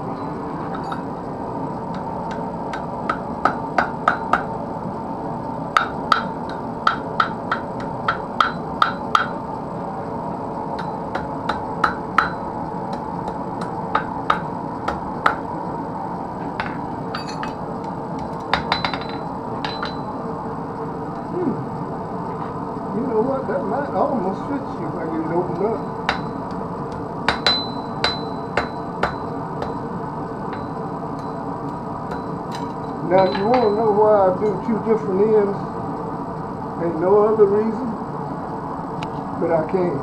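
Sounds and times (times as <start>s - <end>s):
forge hum: 0.0s - 40.0s
hammer ringing on anvil: 5.8s - 9.4s, 10.8s - 15.4s, 16.6s - 17.6s, 18.5s - 20.1s, 25.8s - 26.6s, 27.3s - 29.8s, 30.5s - 31.4s, 32.1s - 34.0s.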